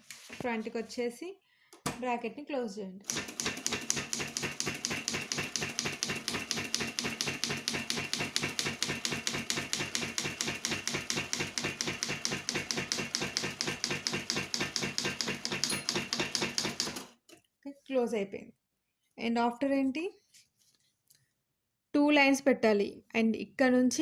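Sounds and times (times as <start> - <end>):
typewriter keystrokes: 3.1 - 17.1.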